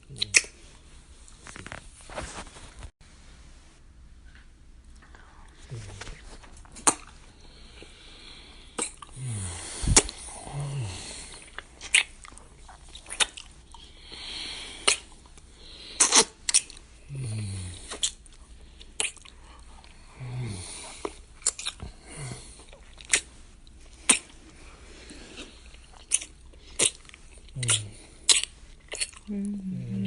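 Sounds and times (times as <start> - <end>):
wet lip smacks: 0.1 - 0.6, 6.8 - 7.2, 8.8 - 9.1, 11.4 - 13.8, 14.8 - 15.4, 16.0 - 16.8, 19.0 - 19.4, 21.0 - 21.8, 22.7 - 23.3, 24.0 - 24.3, 26.0 - 29.3
heavy breathing: 7.3 - 11.6.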